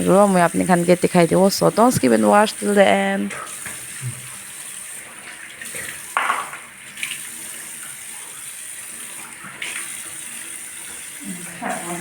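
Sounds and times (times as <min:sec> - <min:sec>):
tap running into sink: 0:05.3 - 0:07.9.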